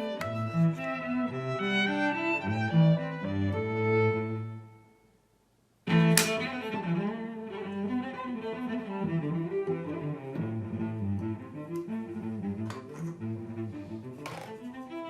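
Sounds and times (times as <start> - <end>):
cello and double bass music: 0.0 - 4.8, 5.8 - 15.0
sharp click: 6.1 - 6.5.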